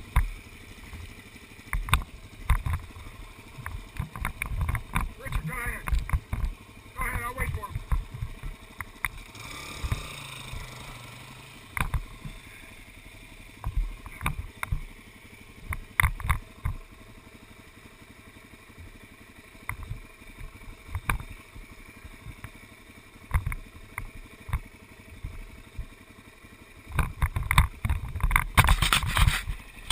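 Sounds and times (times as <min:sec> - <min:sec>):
knocks and rattles over bumps: 0:00.0 - 0:10.7, 0:11.7 - 0:12.4, 0:13.5 - 0:15.0, 0:15.6 - 0:17.0, 0:19.6 - 0:22.6, 0:23.2 - 0:26.0, 0:26.8 - 0:29.9
vehicle engine running low: 0:00.0 - 0:29.9.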